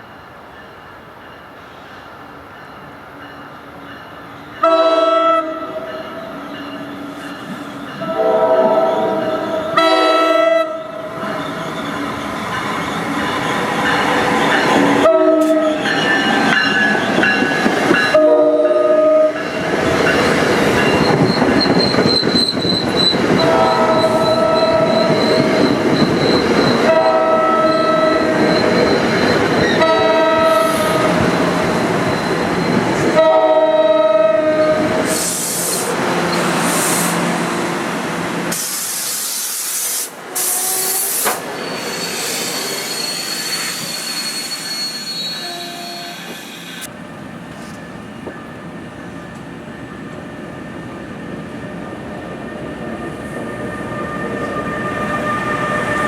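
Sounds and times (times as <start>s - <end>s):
train rolling noise: 0.0s - 56.0s
train horn blasts: 4.6s - 6.7s, 8.0s - 11.2s, 14.9s - 16.0s, 18.0s - 19.5s, 23.4s - 25.2s, 26.8s - 28.4s, 29.7s - 31.2s, 33.1s - 35.6s, 45.4s - 46.3s
thin high squeal: 39.8s - 46.9s.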